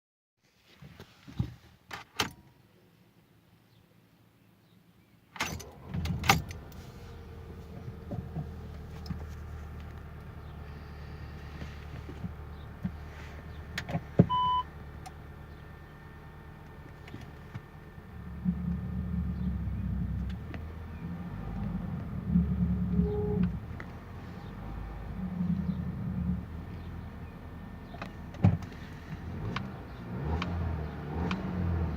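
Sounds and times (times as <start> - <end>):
car engine starting and idling: 5.4 - 31.9
short beep: 14.3 - 14.7, 23.0 - 23.6.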